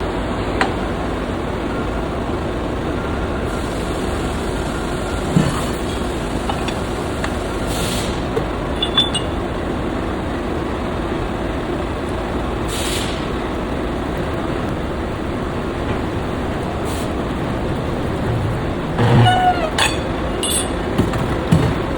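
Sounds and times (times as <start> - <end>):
short metallic clinks: 8.8 - 9.4, 19.8 - 20.8.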